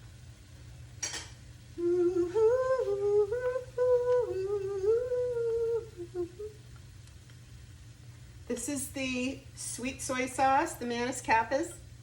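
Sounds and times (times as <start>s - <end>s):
woman humming: 1.8s - 6.6s.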